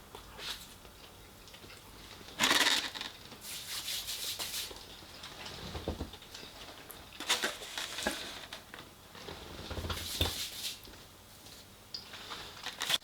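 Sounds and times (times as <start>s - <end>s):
chewing crunchy food: 0.1s - 2.6s.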